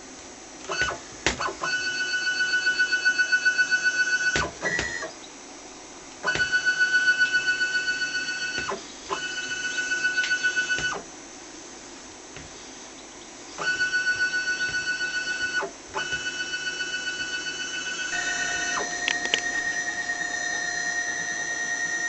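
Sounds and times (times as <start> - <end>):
stepper motors whining: 13.6 - 22.0.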